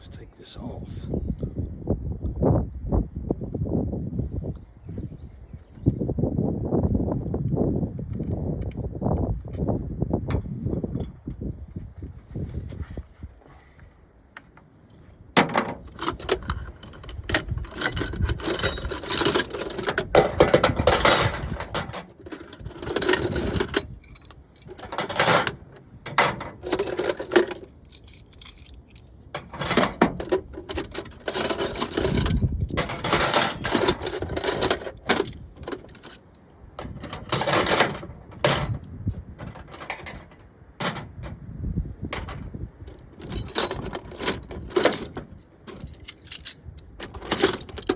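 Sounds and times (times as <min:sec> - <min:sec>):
metal parts clinking and rattling: 0:15.4 - 0:41.4, 0:42.1 - 0:47.9.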